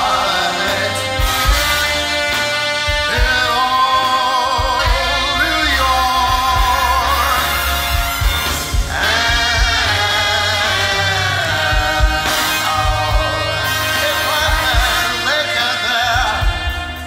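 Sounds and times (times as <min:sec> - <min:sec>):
person singing: 0:00.0 - 0:07.9, 0:08.8 - 0:17.0
big band music: 0:00.0 - 0:17.0.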